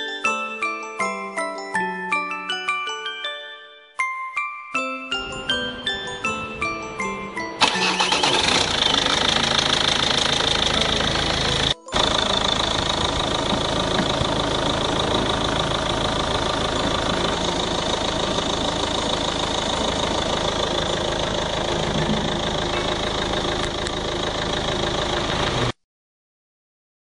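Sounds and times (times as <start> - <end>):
diesel engine idling: 5.2 - 25.8.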